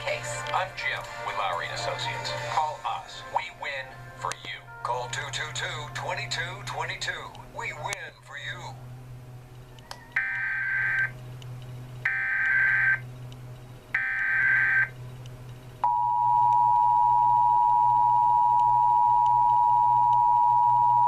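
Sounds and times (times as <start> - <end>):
two-tone attention signal: 15.8 - 21.0.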